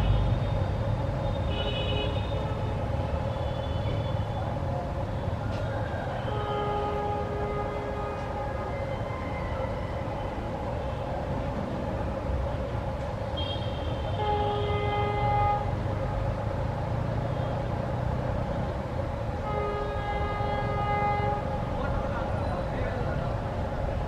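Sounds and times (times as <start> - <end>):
train rumbling: 0.0 - 24.0
train air horn blasts: 6.2 - 9.0, 13.4 - 15.9, 19.4 - 21.7.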